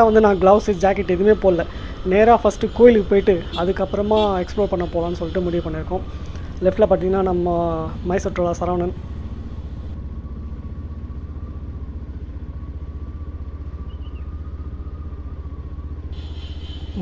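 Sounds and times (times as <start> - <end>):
motorcycle engine running: 0.9 - 10.0.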